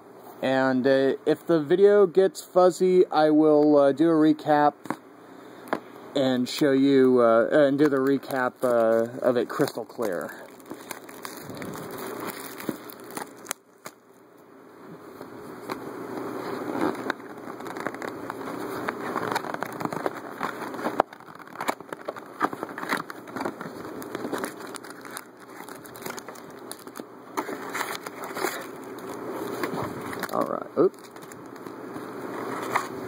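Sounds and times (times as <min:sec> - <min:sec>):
plastic wrap and foil crinkling: 0:07.1 - 0:14.1, 0:16.4 - 0:32.9.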